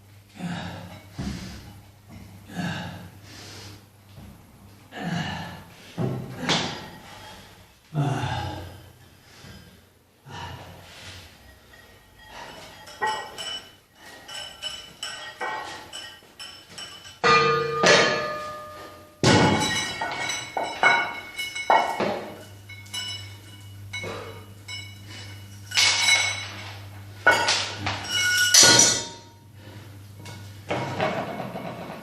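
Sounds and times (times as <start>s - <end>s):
metal weights clanking: 11.5s - 26.6s.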